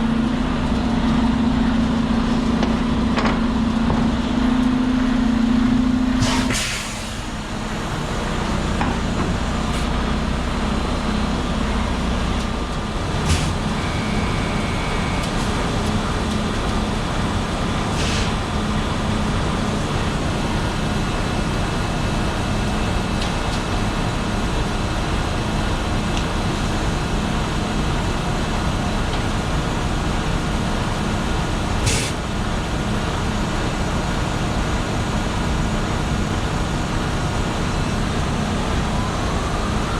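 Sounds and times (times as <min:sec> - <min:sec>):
diesel engine running: 0:00.0 - 0:39.9
short air hisses: 0:06.2 - 0:07.3, 0:31.8 - 0:32.2.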